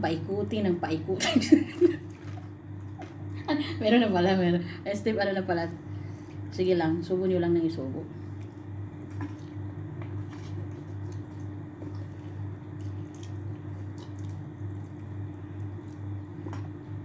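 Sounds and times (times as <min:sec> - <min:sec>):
steady low hum: 0:00.0 - 0:17.0
wet chewing: 0:08.2 - 0:17.0.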